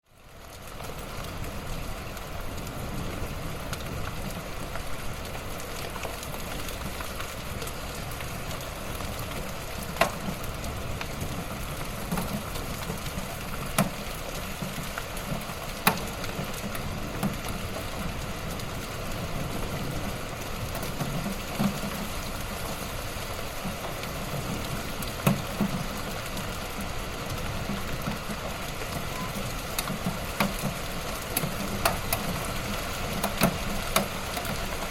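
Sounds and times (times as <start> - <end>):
light rain pattering: 0.0 - 34.9
raindrop tapping: 3.5 - 34.9.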